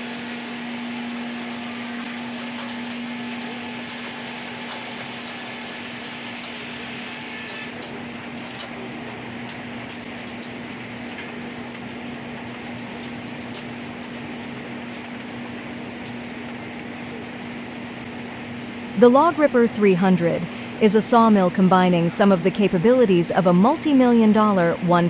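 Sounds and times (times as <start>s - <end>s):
sawmill machine hum: 0.0s - 21.7s.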